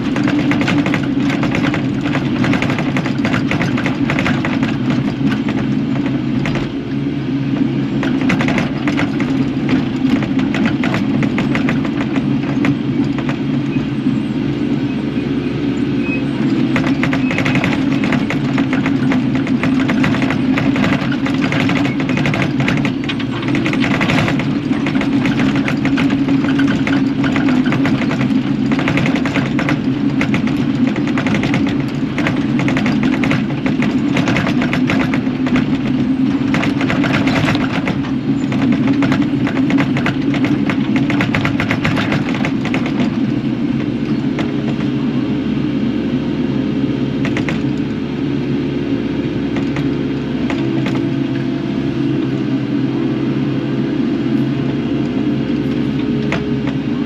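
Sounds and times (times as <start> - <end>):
rattling and scraping: 0.0 - 6.8, 7.6 - 13.6, 16.6 - 45.0
excavator diesel engine running: 0.0 - 57.0.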